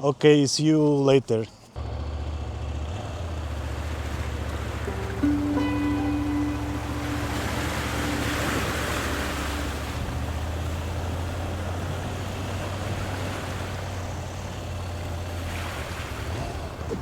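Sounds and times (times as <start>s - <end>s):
low steady hum: 4.2s - 11.8s
faint music: 4.4s - 11.0s.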